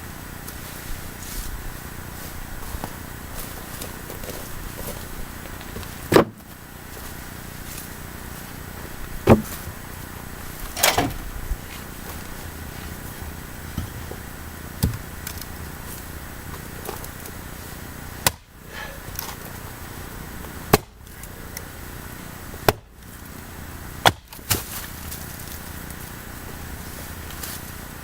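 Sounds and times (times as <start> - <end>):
axe chopping wood: 6.1 - 6.4, 9.3 - 9.6, 18.2 - 18.9, 20.7 - 21.0, 22.6 - 22.9, 24.0 - 24.7.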